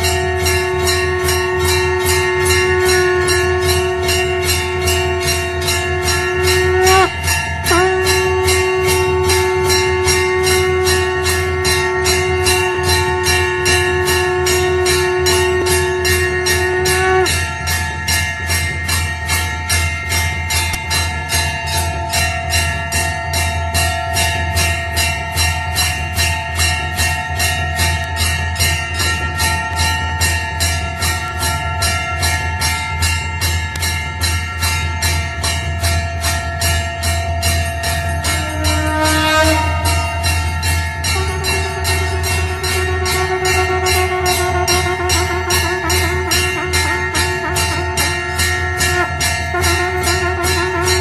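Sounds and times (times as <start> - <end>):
held tone: 0.0 - 18.2, 37.9 - 51.0
steady low drone: 0.0 - 24.8, 26.1 - 51.0
temple bells rung rapidly: 0.0 - 51.0.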